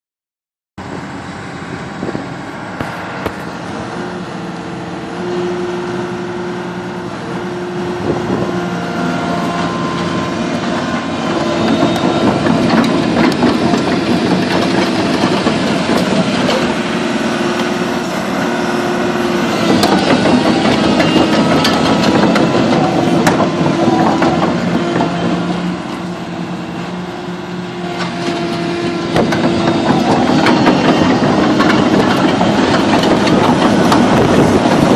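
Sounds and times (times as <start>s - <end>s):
excavator diesel engine running: 0.8s - 34.9s
metal knocks and clanks: 11.4s - 16.7s, 19.6s - 25.4s, 28.0s - 34.9s.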